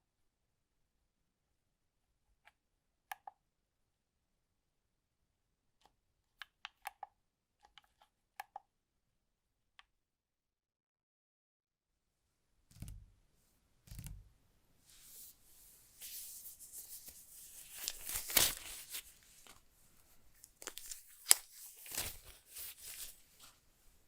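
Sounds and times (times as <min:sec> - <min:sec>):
packaging tearing and crinkling: 0:17.5 - 0:19.1, 0:20.4 - 0:23.2.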